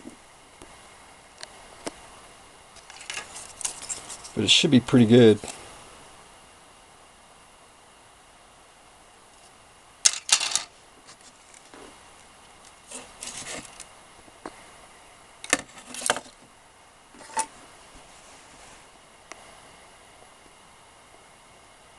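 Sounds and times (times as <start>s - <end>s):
hard objects clicking and rattling: 2.8s - 4.4s, 10.1s - 10.7s.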